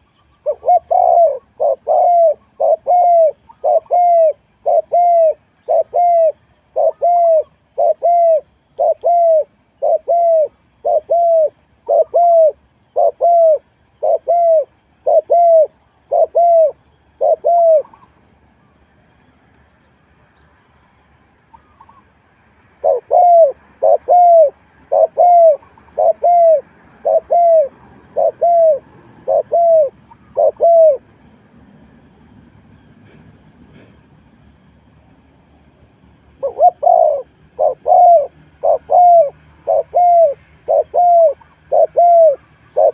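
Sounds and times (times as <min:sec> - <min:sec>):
dove cooing: 0:00.0 - 0:18.2, 0:22.8 - 0:31.1, 0:36.3 - 0:42.9.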